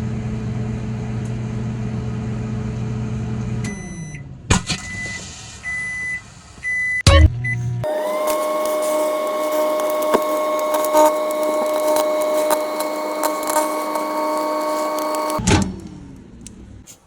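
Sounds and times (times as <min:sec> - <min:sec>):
microwave oven humming: 0:00.0 - 0:04.4, 0:07.3 - 0:15.6.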